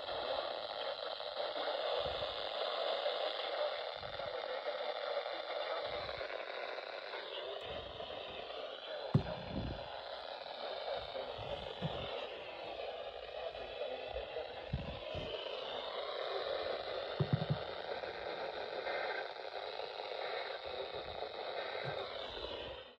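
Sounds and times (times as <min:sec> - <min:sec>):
radio static hiss: 0:00.0 - 0:23.0
dull low thumps: 0:09.1 - 0:10.0, 0:11.3 - 0:12.3.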